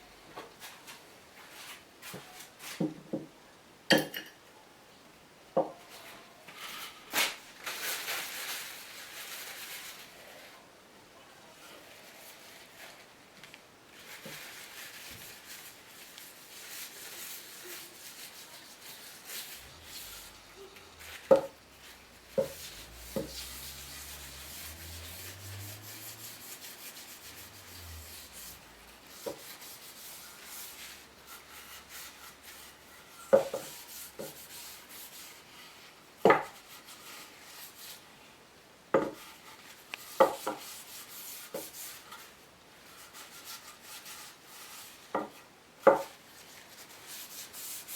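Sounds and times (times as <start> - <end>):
hand rubbing on wood: 16.3 - 32.7.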